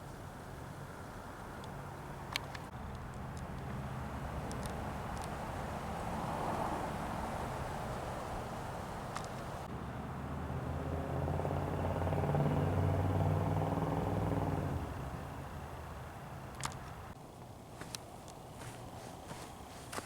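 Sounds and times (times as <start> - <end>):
vehicle engine passing by: 2.8 - 17.2.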